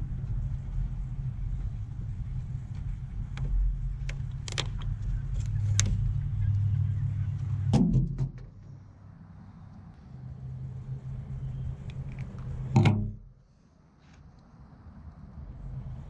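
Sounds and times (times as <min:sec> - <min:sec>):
steady low rumble: 0:00.0 - 0:16.0
sharp clicks and scrapes: 0:02.7 - 0:06.2.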